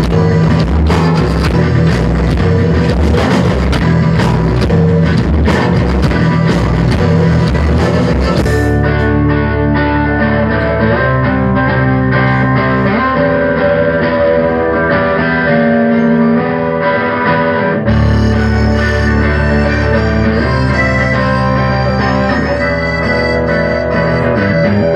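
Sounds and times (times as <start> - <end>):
drum hits: 0.0 - 8.9
electric guitar bending notes: 0.0 - 24.9
rock band playing: 0.0 - 24.9.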